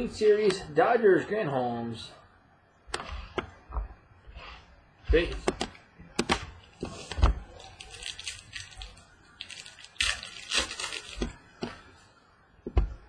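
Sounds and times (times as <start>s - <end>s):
cards and packaging rustling: 6.2s - 11.9s.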